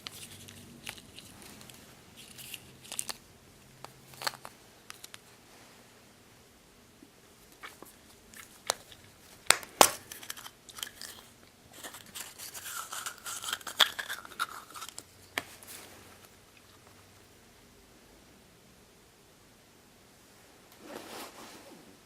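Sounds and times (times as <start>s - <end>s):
plastic packaging crinkling: 0.0s - 3.2s, 7.6s - 15.7s
plastic packaging clicks and snaps: 7.6s - 11.2s.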